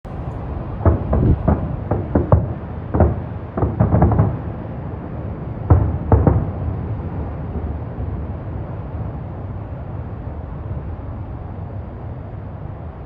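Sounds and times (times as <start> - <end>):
steady low rumble: 0.0 - 13.0
fireworks booms and cracks: 0.1 - 7.7.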